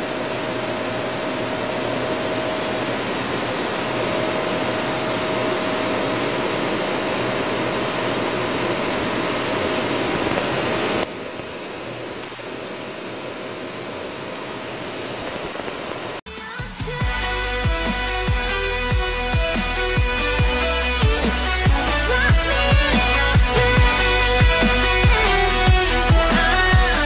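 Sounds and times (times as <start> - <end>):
mid-pitched machine tone: 0.0 - 11.0.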